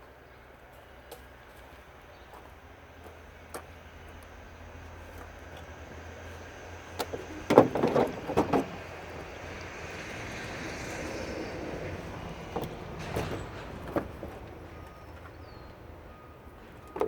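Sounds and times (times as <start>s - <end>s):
knocks and clatter of metal parts: 7.0s - 9.4s, 11.8s - 17.0s.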